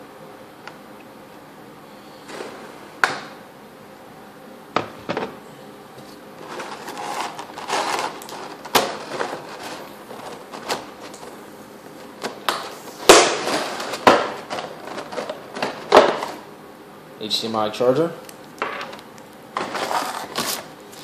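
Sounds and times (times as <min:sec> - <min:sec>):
plastic packaging rustling: 0:06.4 - 0:16.4, 0:19.6 - 0:21.0.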